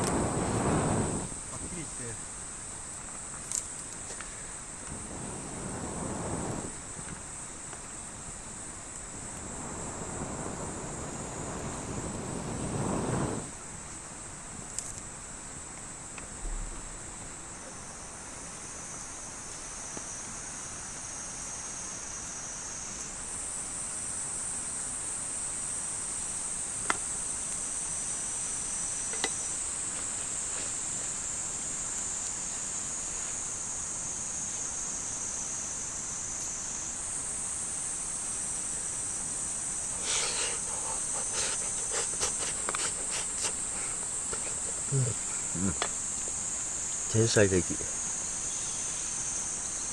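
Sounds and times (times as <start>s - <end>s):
insect chorus shrilling: 0.0s - 13.6s, 27.2s - 49.9s.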